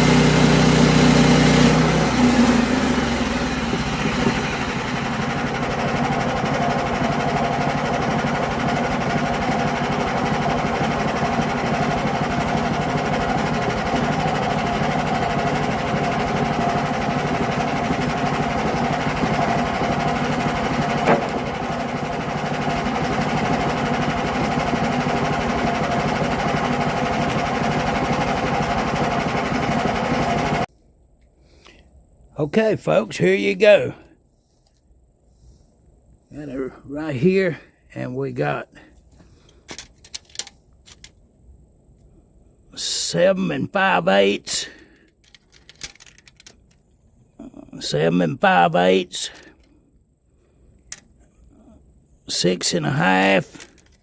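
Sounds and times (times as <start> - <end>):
engine-driven sawmill running: 0.0 - 30.7, 42.8 - 45.0, 47.4 - 49.6, 52.3 - 54.0.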